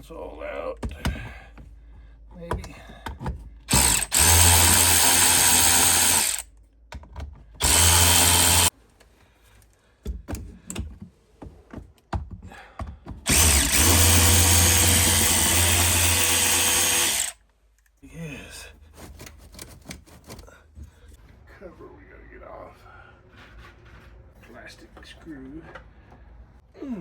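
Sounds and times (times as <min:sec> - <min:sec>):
power drill running: 0:03.7 - 0:06.4, 0:07.6 - 0:08.7, 0:13.3 - 0:17.4.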